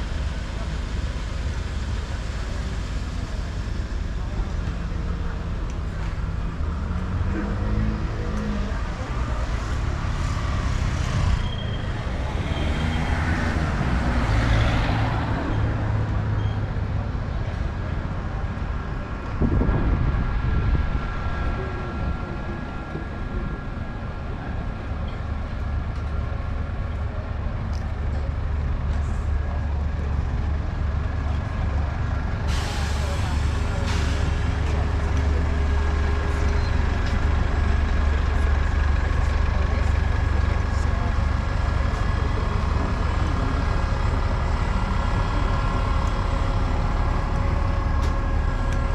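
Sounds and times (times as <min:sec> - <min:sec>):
road traffic rumble: 0:00.0 - 0:48.9
vehicle passing: 0:09.9 - 0:15.9.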